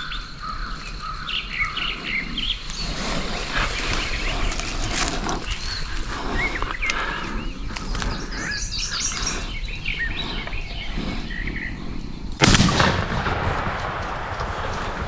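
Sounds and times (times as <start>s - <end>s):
songbirds chirping: 0.0s - 15.0s
echoing shotgun shot: 12.3s - 15.0s.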